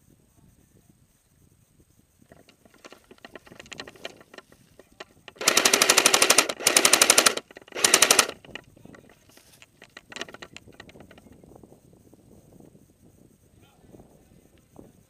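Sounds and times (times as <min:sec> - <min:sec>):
airsoft gun firing bursts: 0:02.3 - 0:04.4, 0:05.2 - 0:08.6.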